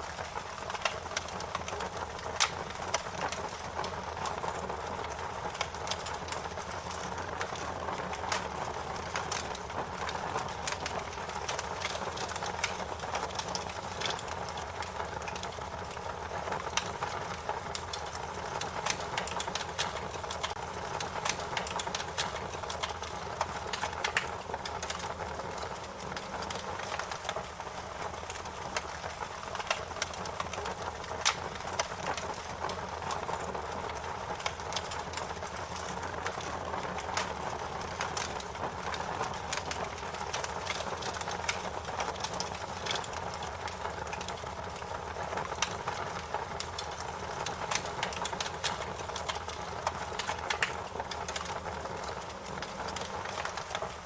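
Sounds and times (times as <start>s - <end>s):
fire crackling and popping: 0.0s - 54.0s.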